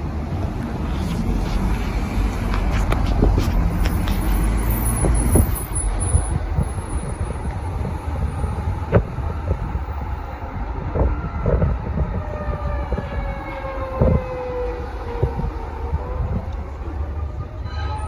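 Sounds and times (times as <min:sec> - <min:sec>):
steady low rumble: 0:00.0 - 0:17.8
warning siren winding down: 0:06.3 - 0:18.0.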